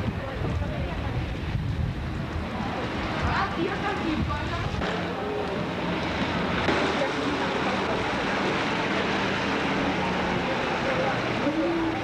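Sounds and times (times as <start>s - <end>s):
wind noise on microphone: 0.0s - 5.2s
faint distant voices: 0.0s - 12.0s.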